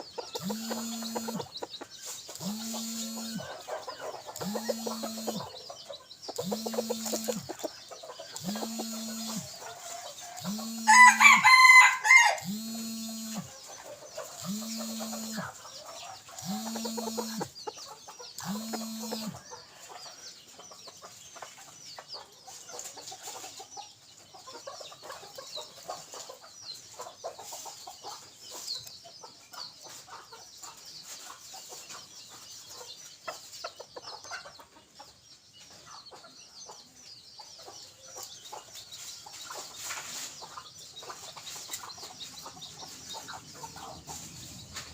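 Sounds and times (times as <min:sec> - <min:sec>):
faint clucking: 0:00.0 - 0:09.6, 0:10.4 - 0:11.0, 0:14.2 - 0:19.6
rooster crowing: 0:08.4 - 0:13.5.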